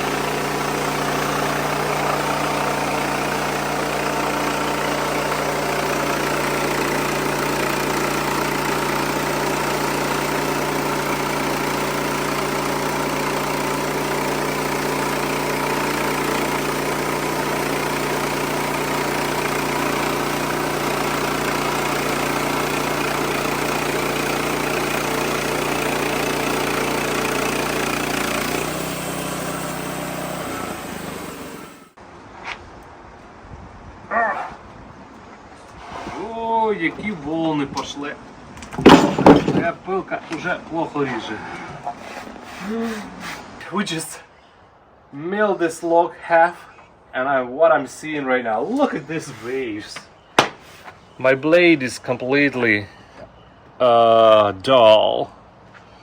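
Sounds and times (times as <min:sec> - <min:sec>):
bandsaw mill cutting log: 0:00.0 - 0:32.0, 0:38.6 - 0:43.9.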